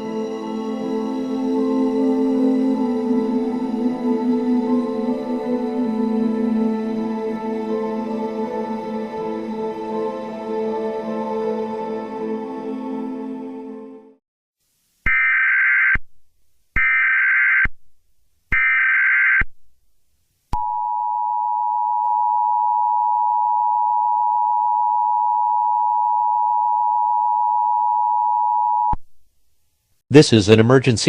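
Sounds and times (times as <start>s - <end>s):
background music: 0.0s - 14.2s.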